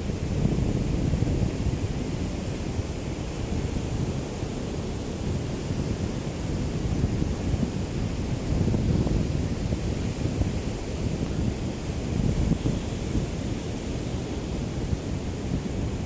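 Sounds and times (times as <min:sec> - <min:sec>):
wind buffeting microphone: 0:05.2 - 0:16.0.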